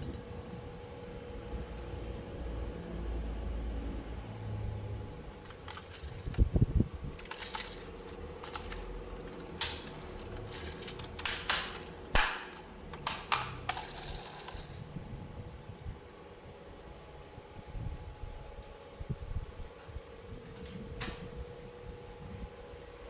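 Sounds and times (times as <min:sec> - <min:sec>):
steady low hum: 0:00.0 - 0:23.0
plastic clicks and clacks: 0:05.3 - 0:06.5, 0:07.2 - 0:14.7
plastic toys thumping: 0:07.2 - 0:14.7.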